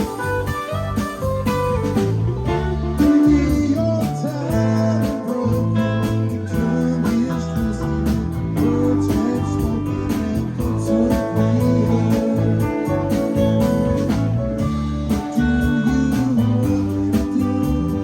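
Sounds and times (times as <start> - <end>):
bass: 0.0 - 18.0
drums: 0.0 - 18.0
electric guitar with bending notes: 0.0 - 18.0.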